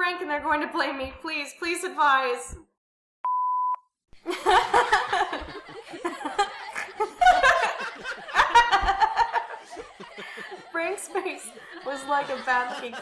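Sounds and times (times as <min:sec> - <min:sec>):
person laughing: 0:04.2 - 0:13.0.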